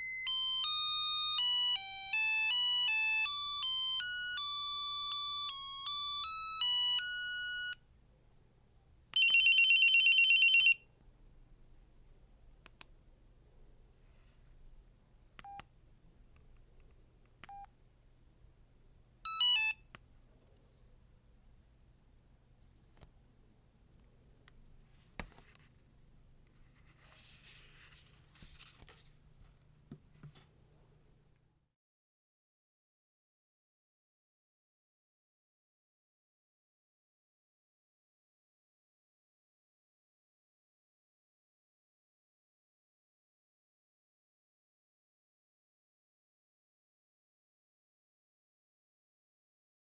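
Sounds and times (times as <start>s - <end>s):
beeping ringtone tune: 0.0s - 7.8s, 9.2s - 10.8s
soft rustle: 14.0s - 14.6s, 26.5s - 30.5s.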